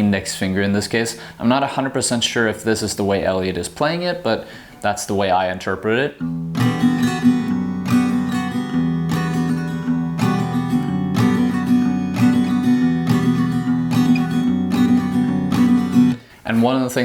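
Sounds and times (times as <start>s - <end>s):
fingerpicked acoustic guitar: 6.2s - 16.6s.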